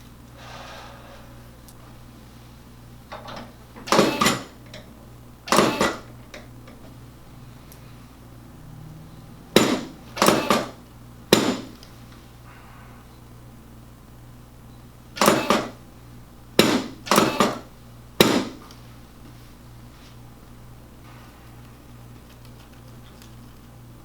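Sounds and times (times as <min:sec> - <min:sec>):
chiropractic table clacking: 0:03.1 - 0:04.9, 0:05.5 - 0:06.9, 0:09.5 - 0:11.8, 0:15.2 - 0:15.8, 0:16.6 - 0:18.7.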